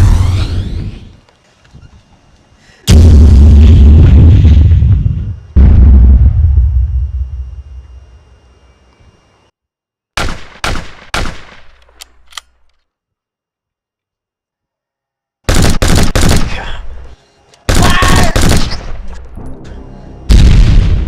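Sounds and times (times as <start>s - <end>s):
single gunshots: 10.2s - 11.7s, 17.7s - 19.0s
rapid machine-gun fire: 15.5s - 16.7s, 17.7s - 19.0s.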